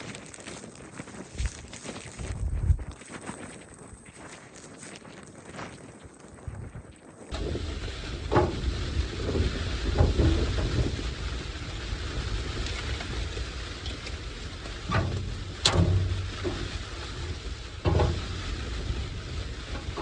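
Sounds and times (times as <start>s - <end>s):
wind buffeting microphone: 1.2s - 3.0s, 6.4s - 20.0s
sharp knocks: 14.9s - 16.8s.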